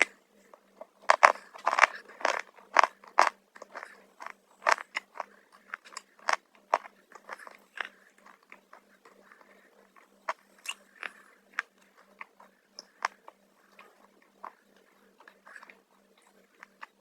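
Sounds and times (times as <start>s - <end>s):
chips crunching while chewed: 1.0s - 8.9s.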